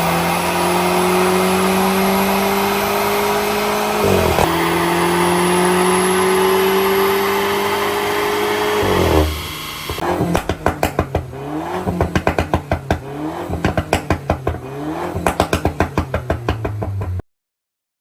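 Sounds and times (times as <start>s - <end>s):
car engine revving: 0.0s - 17.2s
exhaust pops and bangs: 8.8s - 17.2s.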